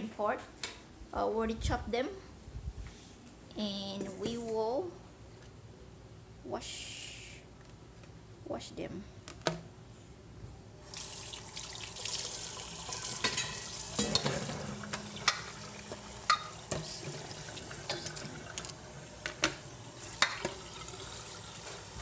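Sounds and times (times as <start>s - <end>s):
tap water running: 10.8s - 22.0s
bowl and dishes knocking: 13.2s - 15.5s.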